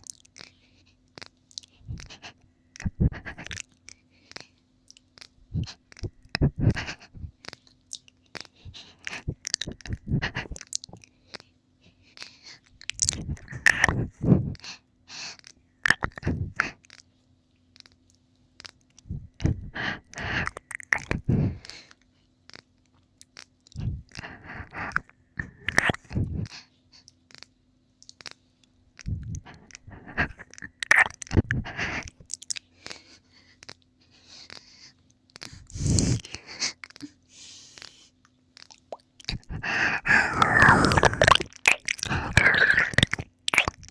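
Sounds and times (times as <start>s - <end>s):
wet mouth clicks and smacks: 0.0s - 0.5s, 1.2s - 2.2s, 7.4s - 11.4s, 12.8s - 14.0s, 15.4s - 17.1s, 20.4s - 21.8s, 24.9s - 26.1s, 27.0s - 28.4s, 29.0s - 32.7s, 38.2s - 39.6s, 40.4s - 43.9s.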